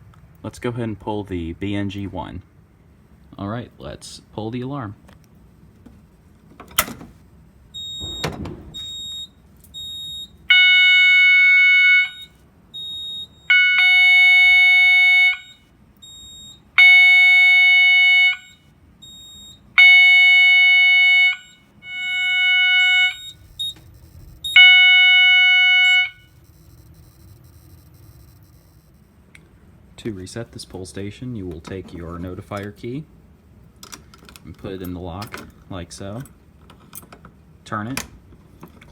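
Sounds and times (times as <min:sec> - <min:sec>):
alarm horn pulsing: 0:09.8 - 0:15.7, 0:16.8 - 0:18.7, 0:19.8 - 0:29.2.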